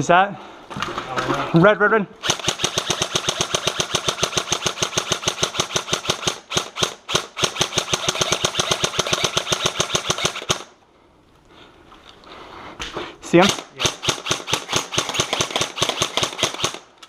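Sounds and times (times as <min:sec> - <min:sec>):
airsoft gun firing bursts: 0:02.2 - 0:10.7, 0:13.4 - 0:16.9.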